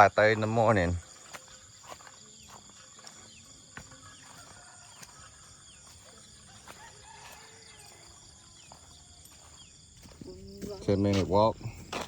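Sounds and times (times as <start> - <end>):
insects chirping: 0.0 - 12.0
footsteps on path: 0.4 - 12.0
rooster crowing faintly: 3.9 - 8.3.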